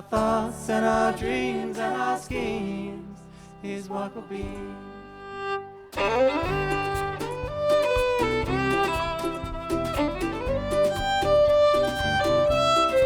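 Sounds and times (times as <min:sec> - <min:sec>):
plucked strings accompaniment: 0:00.0 - 0:13.0
sliding lead melody: 0:03.6 - 0:13.0.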